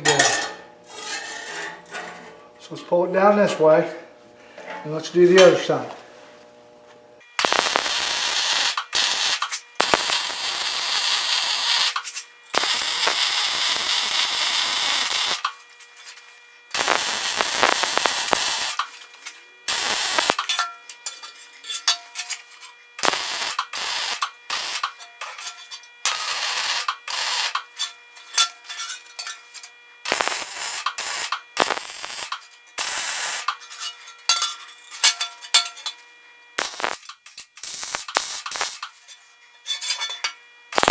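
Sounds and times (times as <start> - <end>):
arc welding crackling hiss: 7.3 - 34.1, 35.6 - 40.0, 40.6 - 40.9.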